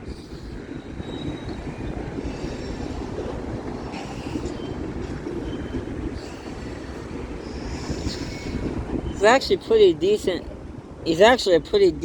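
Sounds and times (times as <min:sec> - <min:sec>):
train wheels rumbling on rails: 0:00.0 - 0:09.6
faint high-pitched wheel squeals: 0:00.1 - 0:03.4, 0:04.0 - 0:09.2.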